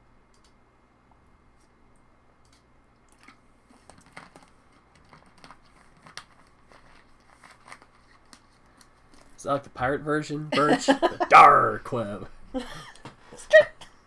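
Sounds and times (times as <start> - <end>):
foil wrapper crinkling and tearing: 3.2 - 9.3.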